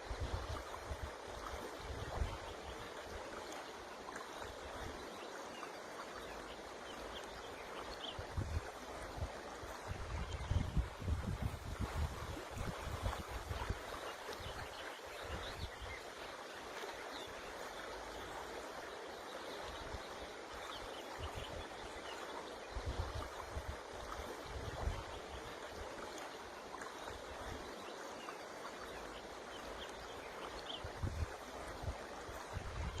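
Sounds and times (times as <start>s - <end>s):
river water rushing: 0.3s - 33.0s
wind gusts on microphone: 8.1s - 16.1s, 22.7s - 26.0s, 30.7s - 33.0s.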